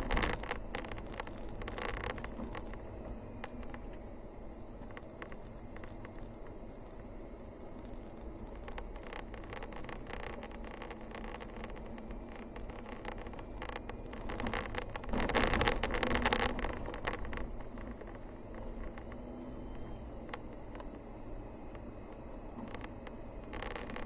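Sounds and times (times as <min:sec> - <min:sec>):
light rattles and clicks: 0:00.0 - 0:02.8, 0:07.8 - 0:19.2
vehicle engine and tyre noise: 0:00.0 - 0:24.0.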